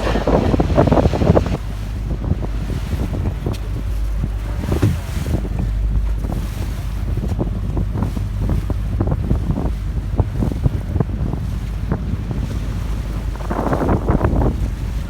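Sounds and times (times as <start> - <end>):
boat engine droning: 0.0 - 15.0
wind buffeting microphone: 0.0 - 15.0.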